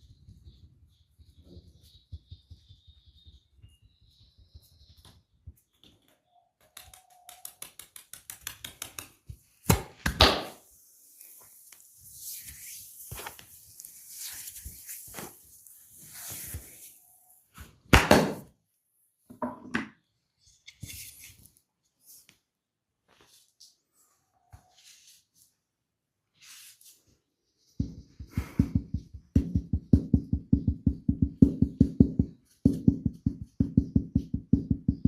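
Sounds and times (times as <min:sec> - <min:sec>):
hands rubbing skin or hair: 0:06.7 - 0:09.4, 0:10.5 - 0:17.1
loud hand slap: 0:09.7 - 0:10.6, 0:17.9 - 0:18.5.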